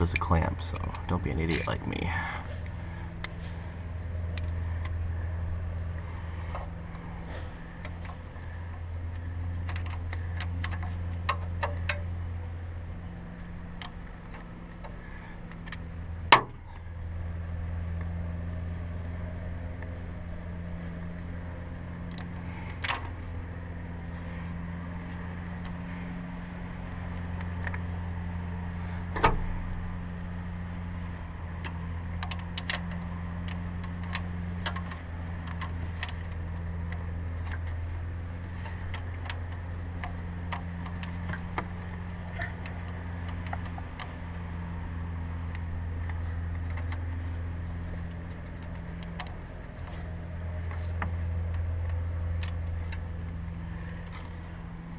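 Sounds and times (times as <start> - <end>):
hand tools clinking on metal: 0.0 - 2.3
steady low hum: 0.0 - 54.9.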